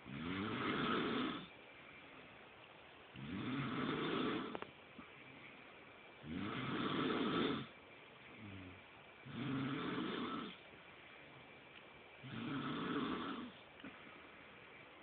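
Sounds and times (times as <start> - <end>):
person snoring: 0.0 - 1.5, 3.2 - 4.6, 6.2 - 7.7, 8.4 - 10.6, 12.2 - 13.6.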